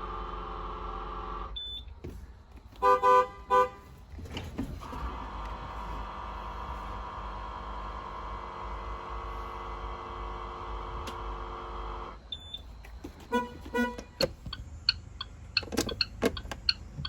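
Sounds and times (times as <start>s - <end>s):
bus horn blast: 0.0s - 1.6s, 2.8s - 4.0s, 13.2s - 14.3s.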